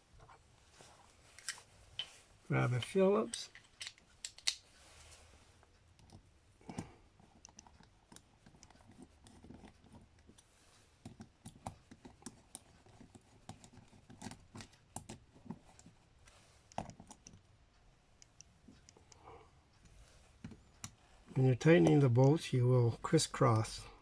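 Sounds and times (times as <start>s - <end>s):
small metal clicks: 1.3s - 4.8s.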